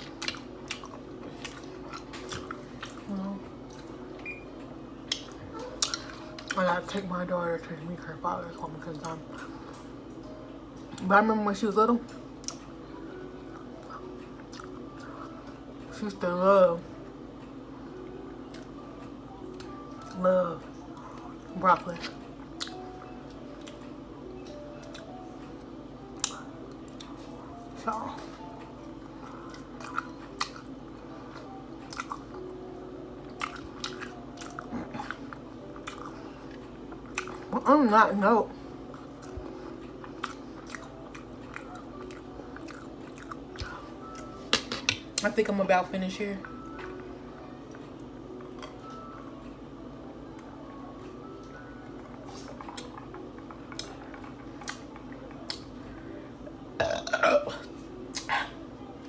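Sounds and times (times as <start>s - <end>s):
person chewing food: 0.0s - 4.4s, 5.0s - 6.6s, 13.4s - 15.6s, 22.4s - 27.5s, 28.7s - 32.6s, 33.2s - 37.5s, 38.9s - 45.2s, 47.7s - 49.0s, 51.4s - 55.8s
wet eating smacks and clicks: 5.1s - 6.6s, 54.6s - 55.7s
loud burp: 56.8s - 57.6s.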